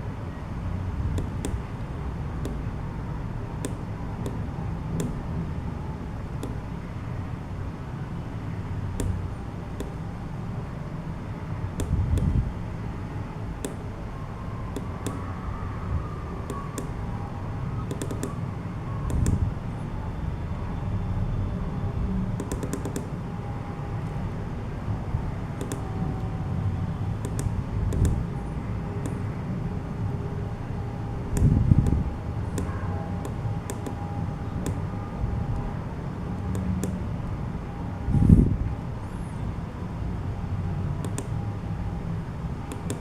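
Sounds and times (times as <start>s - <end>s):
steady low rumble: 0.0s - 43.0s
flashlight switch clicking: 13.6s - 13.8s, 19.1s - 19.4s, 25.6s - 25.8s, 27.2s - 28.2s, 42.7s - 43.0s.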